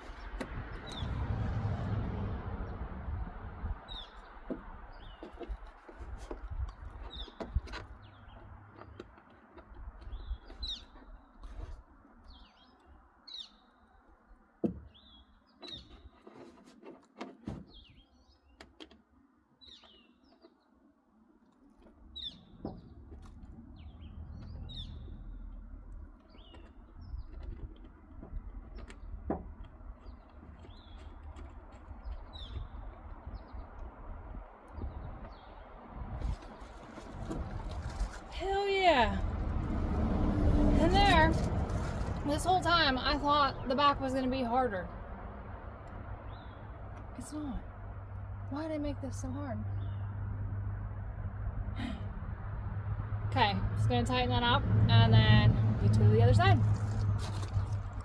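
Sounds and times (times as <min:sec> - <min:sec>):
low rumble: 0:00.0 - 0:05.2, 0:22.2 - 0:27.3, 0:32.2 - 0:58.0.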